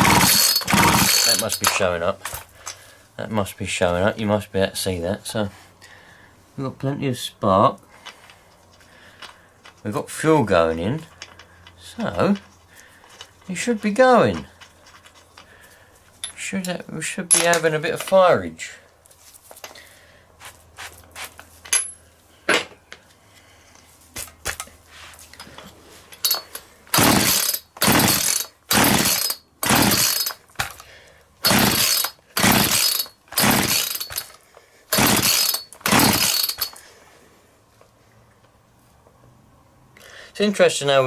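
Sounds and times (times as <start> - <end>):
chainsaw starter cord yanked: 0.0 - 2.8, 26.2 - 36.8
handling clicks and knocks: 0.1 - 2.8.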